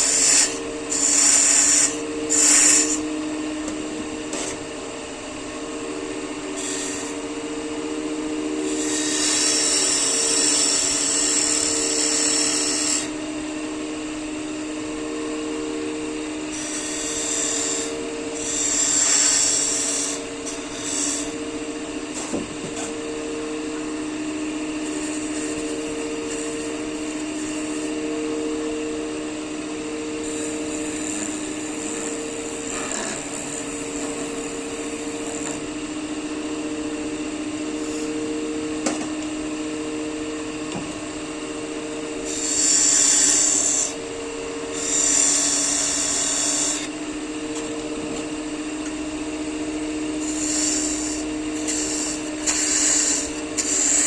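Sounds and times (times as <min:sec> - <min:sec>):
wood lathe humming: 0:00.0 - 0:54.0.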